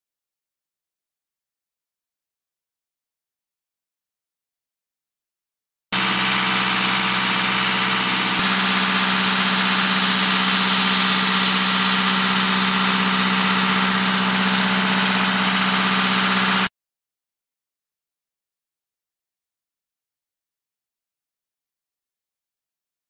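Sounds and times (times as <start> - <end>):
diesel generator running: 6.0 - 16.7.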